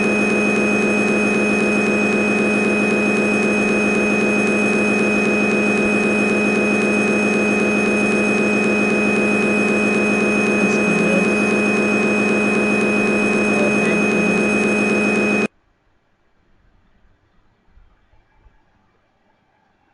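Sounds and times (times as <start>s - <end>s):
machine hum with constant whine: 0.0s - 19.9s.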